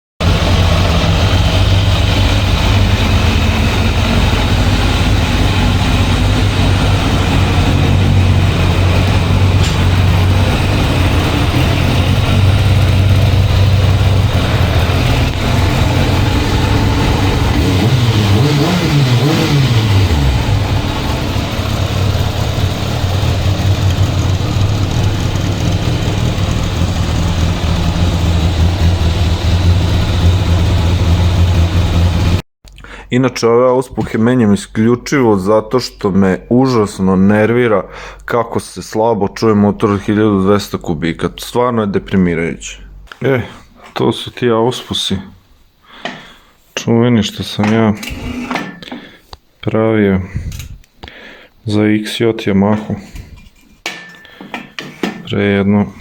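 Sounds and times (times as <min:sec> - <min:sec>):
motorcycle engine idling: 0:00.2 - 0:32.4.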